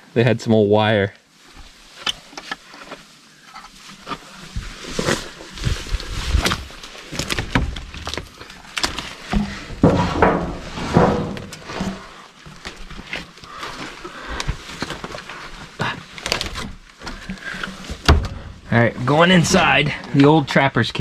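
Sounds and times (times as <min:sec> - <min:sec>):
knocks and scrapes of old wood: 0:01.4 - 0:20.6
footsteps: 0:09.3 - 0:16.0.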